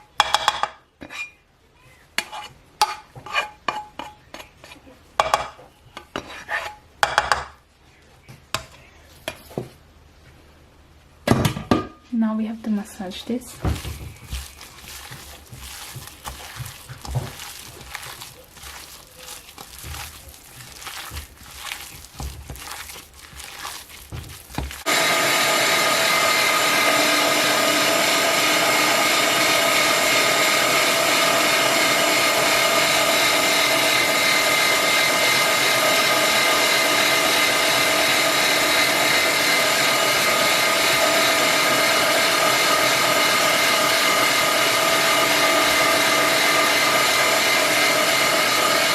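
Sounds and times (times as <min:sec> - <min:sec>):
hands mixing minced meat: 0:12.7 - 0:48.9
kitchen machine motor whining: 0:24.6 - 0:48.9.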